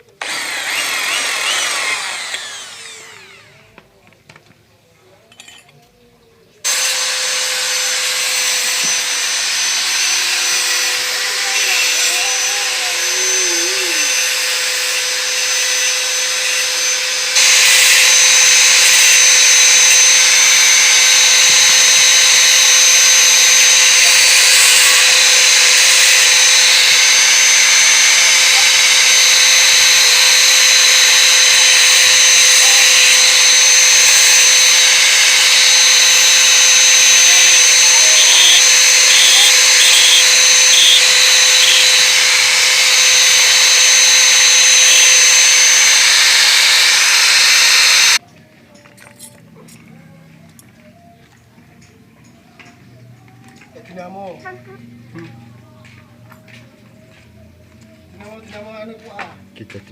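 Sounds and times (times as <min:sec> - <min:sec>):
power tool motor whining: 0:00.0 - 0:03.9, 0:06.6 - 0:48.2.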